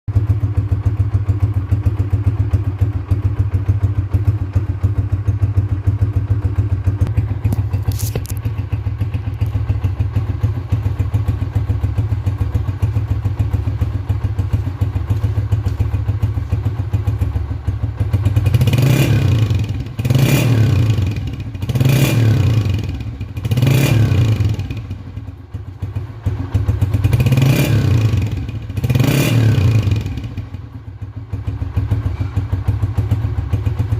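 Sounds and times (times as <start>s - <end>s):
motorcycle engine idling: 0.1s - 33.9s
engine revving: 18.1s - 24.9s, 26.6s - 30.4s.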